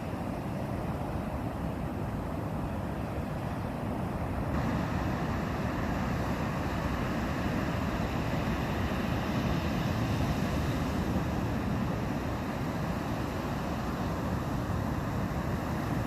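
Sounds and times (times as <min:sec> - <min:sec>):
waves breaking on shore: 0:00.0 - 0:16.0.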